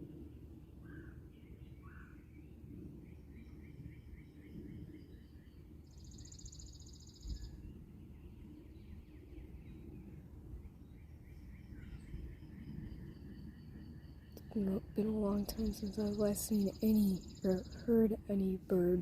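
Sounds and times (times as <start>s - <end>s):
small birds chirping: 0.0s - 19.0s
buzzy bird trill: 5.9s - 7.6s, 13.9s - 19.0s
low outdoor rumble: 7.4s - 19.0s.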